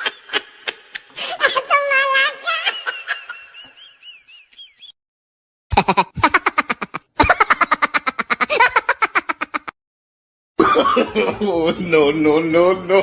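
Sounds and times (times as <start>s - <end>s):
rapid laughing sound effect: 5.7s - 9.8s.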